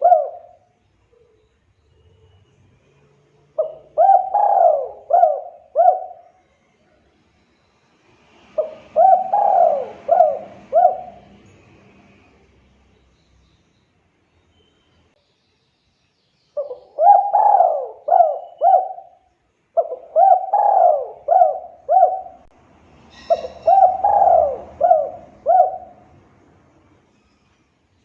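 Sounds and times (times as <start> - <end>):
dove cooing: 0.0 - 1.4, 3.6 - 6.4, 8.6 - 11.5, 16.6 - 26.2.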